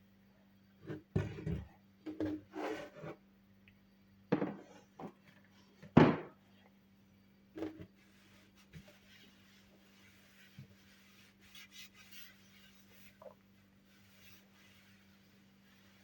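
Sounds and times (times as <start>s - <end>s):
faint steady hum: 0.0s - 16.0s
rubbing scrapes: 7.6s - 16.0s.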